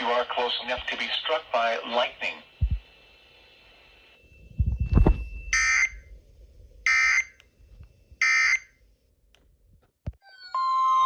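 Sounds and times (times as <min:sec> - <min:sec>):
low rumbling thud: 0:04.6 - 0:06.9
short buzzing data bursts: 0:05.6 - 0:06.0, 0:06.9 - 0:07.4.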